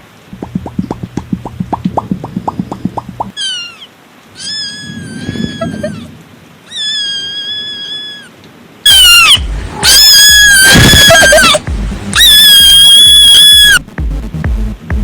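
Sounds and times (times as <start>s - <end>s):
cat meowing: 3.4s - 6.1s, 6.7s - 11.6s.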